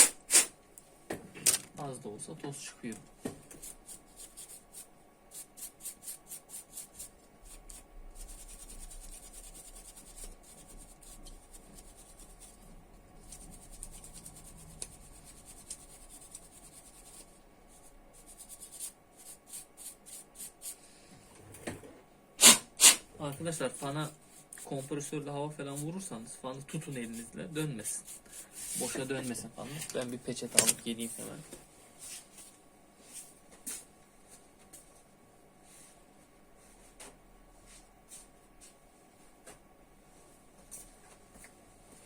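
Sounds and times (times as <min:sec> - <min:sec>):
rhythmic rubbing strokes: 0:03.6 - 0:20.8.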